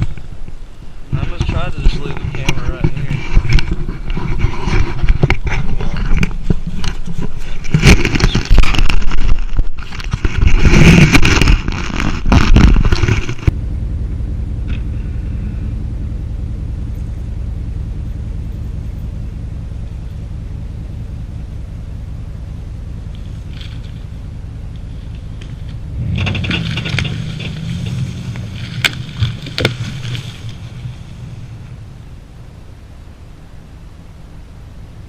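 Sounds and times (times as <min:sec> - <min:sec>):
vehicle engine running under load: 0:00.0 - 0:35.0
log scraping and crashing through brush: 0:01.1 - 0:13.6, 0:23.0 - 0:31.6.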